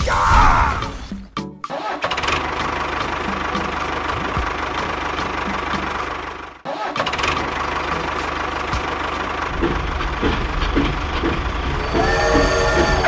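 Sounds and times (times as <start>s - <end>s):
small engine running: 9.5s - 13.0s.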